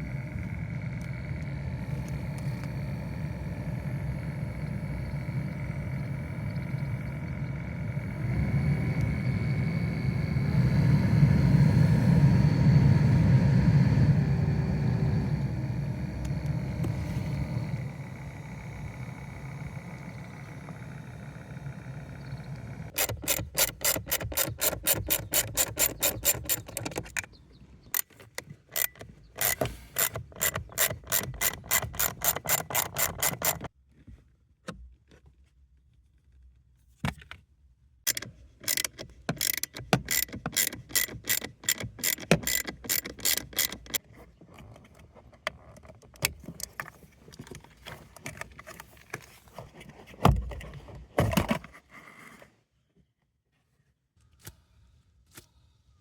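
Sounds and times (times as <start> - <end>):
fan motor rapid clicking: 0.0 - 33.7, 38.1 - 44.0.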